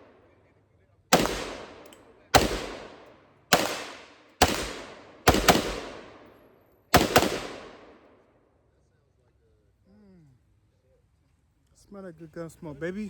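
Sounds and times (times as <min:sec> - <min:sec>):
gunshots with echo: 0:01.1 - 0:08.1.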